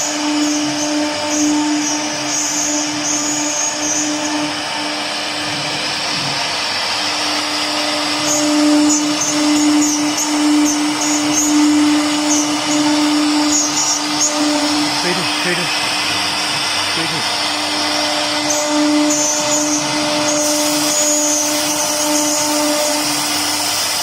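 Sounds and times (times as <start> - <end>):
cnc router spindle whine: 0.0 - 24.0
broad hiss: 18.9 - 24.0.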